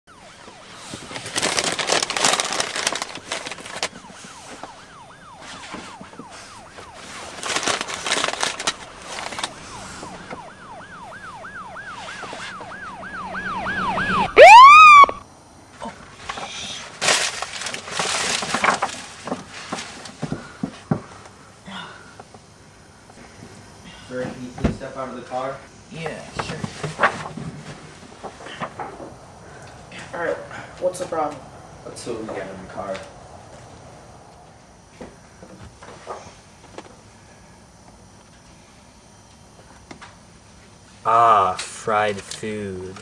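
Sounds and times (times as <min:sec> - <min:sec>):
police siren yelping: 0:00.0 - 0:15.2
siren wail: 0:00.0 - 0:15.3.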